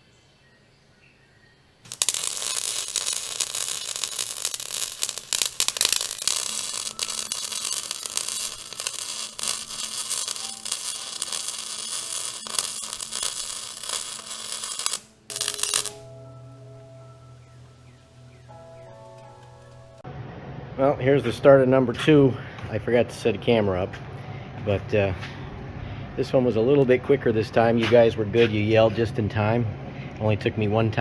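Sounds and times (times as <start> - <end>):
welder arc crackling: 1.9 - 16.2.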